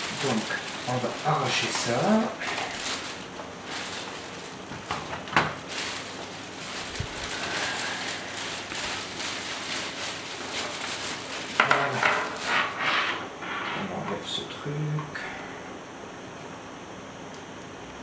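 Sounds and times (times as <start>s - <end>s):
plastic packaging crackling: 0.0s - 12.8s.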